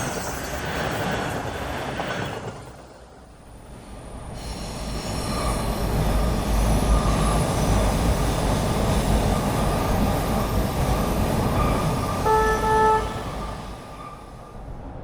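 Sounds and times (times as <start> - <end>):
subway train rumbling: 0.0 - 15.0
steel wheels squealing on rails: 4.1 - 14.8.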